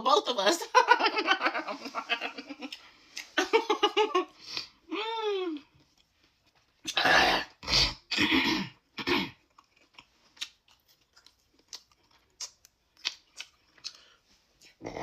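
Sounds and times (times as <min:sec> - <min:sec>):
person coughing: 0:08.1 - 0:09.4
wet mouth-smacking and chewing: 0:09.5 - 0:14.8.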